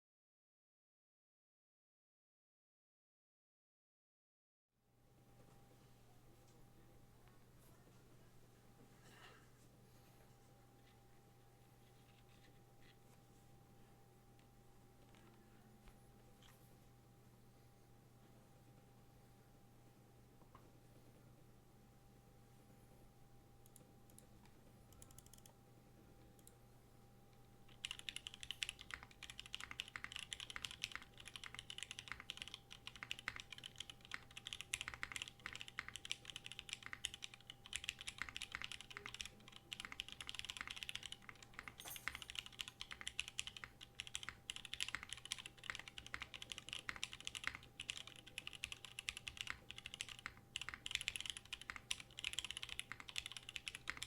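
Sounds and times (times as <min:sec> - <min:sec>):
mechanical keyboard typing: 0:24.9 - 0:25.5, 0:27.7 - 0:54.0.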